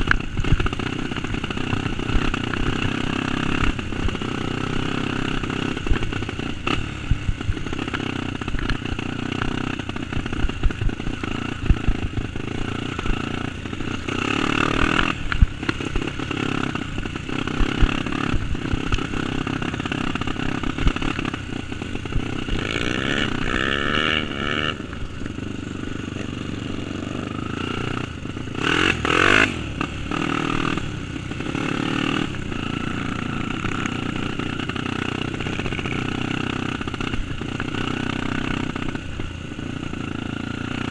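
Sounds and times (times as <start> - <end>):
motorcycle engine running: 0.0 - 40.9.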